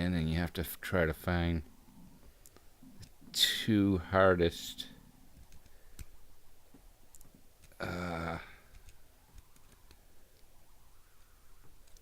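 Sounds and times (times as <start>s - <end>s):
person vocal sound: 7.8s - 8.7s.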